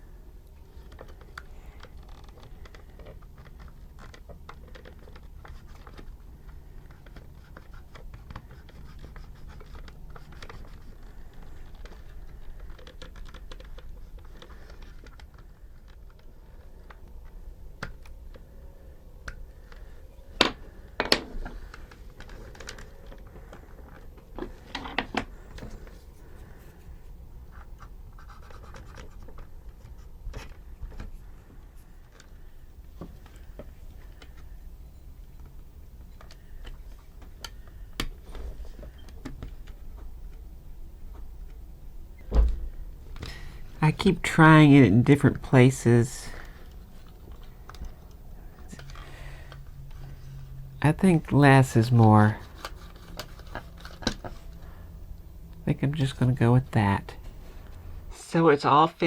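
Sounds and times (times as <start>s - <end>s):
sharp plastic clicks: 0.4s - 18.5s
hands scratching and rubbing tape: 0.6s - 18.5s, 44.8s - 56.6s.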